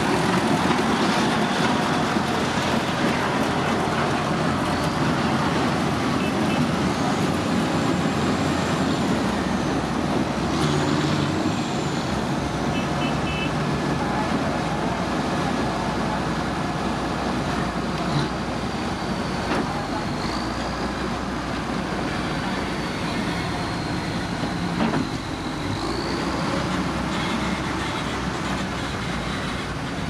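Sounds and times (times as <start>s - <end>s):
diesel machinery running: 0.0s - 30.0s.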